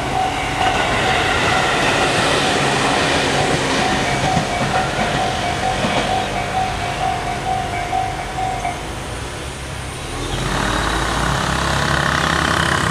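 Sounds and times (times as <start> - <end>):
level-crossing warning bell: 0.0 - 9.8
road vehicle passing: 0.0 - 12.9.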